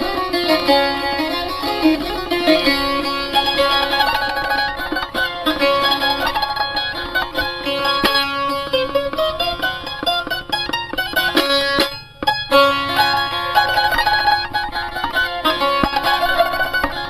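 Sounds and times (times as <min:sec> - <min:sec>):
plucked string instrument melody: 0:00.0 - 0:17.0.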